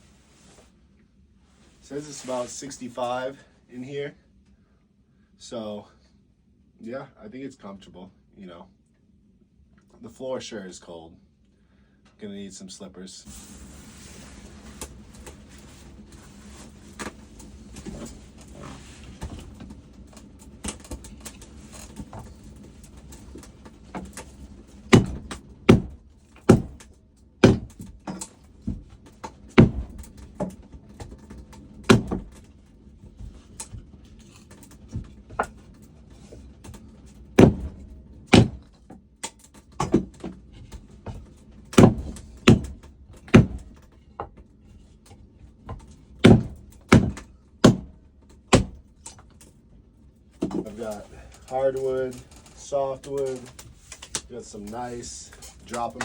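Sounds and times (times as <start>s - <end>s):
axe chopping firewood: 24.9s - 28.3s, 29.5s - 30.1s, 31.9s - 32.3s, 37.4s - 38.7s, 41.7s - 43.8s, 46.2s - 48.9s
wood knocking while handled: 24.9s - 28.9s, 37.4s - 38.7s, 39.8s - 44.4s, 45.7s - 48.8s.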